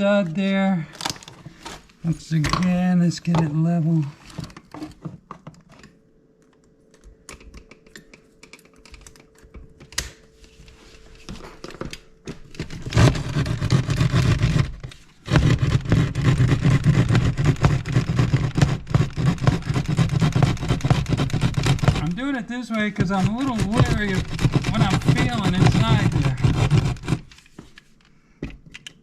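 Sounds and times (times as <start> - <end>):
hand saw cutting drywall: 12.6 - 27.4.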